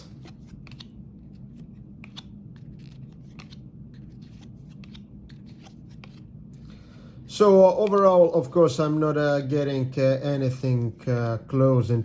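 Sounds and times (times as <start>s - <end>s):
trading cards clicking and rustling: 0.0s - 6.3s
low steady hum: 0.0s - 12.0s.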